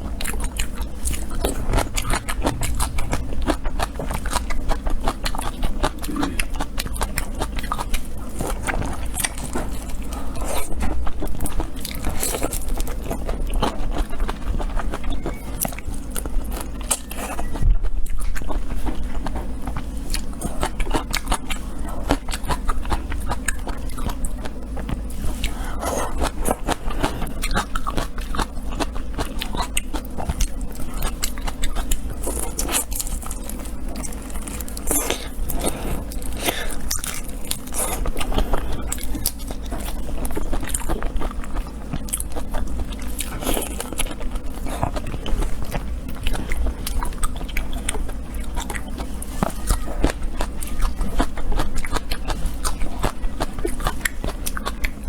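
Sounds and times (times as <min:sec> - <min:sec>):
crunching and chewing food: 0:00.0 - 0:55.0
steady low hum: 0:00.0 - 0:55.0.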